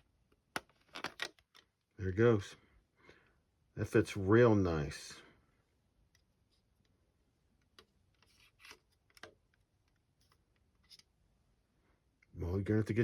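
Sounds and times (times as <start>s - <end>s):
plastic parts clicking and tapping: 0.3s - 1.7s.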